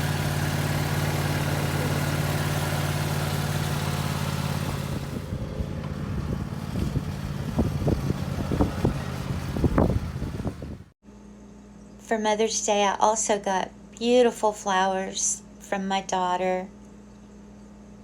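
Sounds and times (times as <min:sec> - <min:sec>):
lawn mower engine running: 0:00.0 - 0:10.9.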